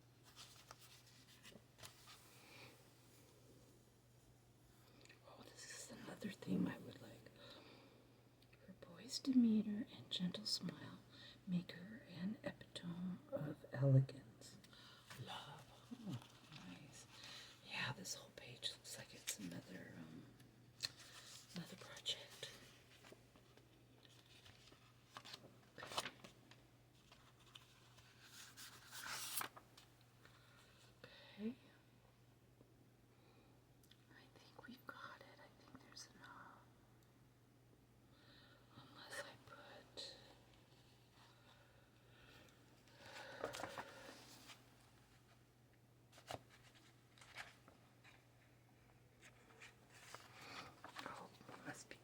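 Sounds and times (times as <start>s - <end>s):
faint low hum: 0.0s - 52.0s
paper rustling: 0.2s - 2.3s, 24.1s - 29.9s, 43.1s - 44.6s, 46.1s - 48.3s, 49.2s - 51.6s.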